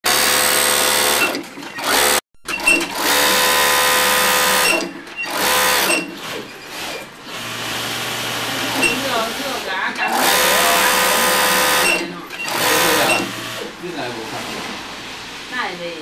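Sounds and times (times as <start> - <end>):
sewing machine running: 0.0 - 13.7.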